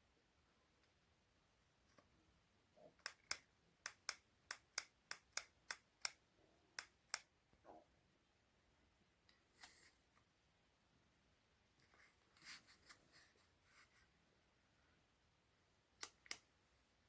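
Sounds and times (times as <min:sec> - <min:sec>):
soft rustle: 0:11.7 - 0:14.2.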